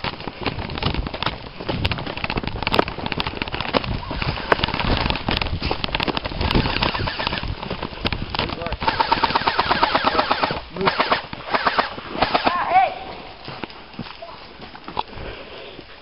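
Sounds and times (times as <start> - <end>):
rustle of movement: 0.0 - 9.0, 9.6 - 16.0
airsoft guns firing: 6.6 - 7.5, 8.8 - 12.7.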